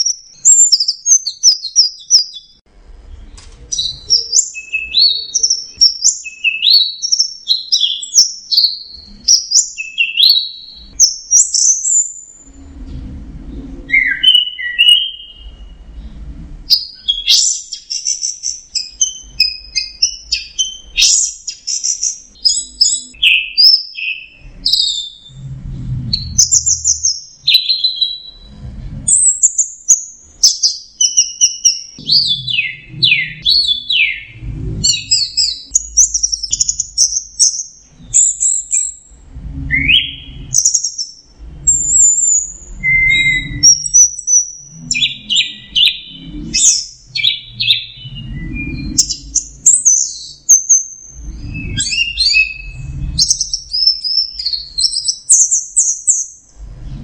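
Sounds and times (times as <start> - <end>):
thrush singing whistled notes: 3.2 - 12.8, 13.5 - 56.4
low rumbles: 12.4 - 14.0, 15.3 - 16.7, 24.4 - 27.4, 28.2 - 29.3, 32.0 - 37.0, 39.0 - 40.6, 41.2 - 43.8, 51.1 - 53.9, 56.5 - 57.0.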